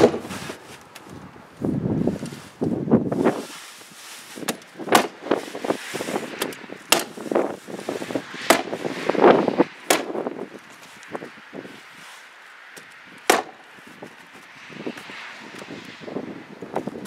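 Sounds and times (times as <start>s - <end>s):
dull handling sounds: 2.0s - 8.8s
hammer tacker strikes: 4.5s - 5.3s, 6.9s - 7.2s, 8.5s - 8.8s, 9.8s - 10.2s, 13.3s - 13.6s.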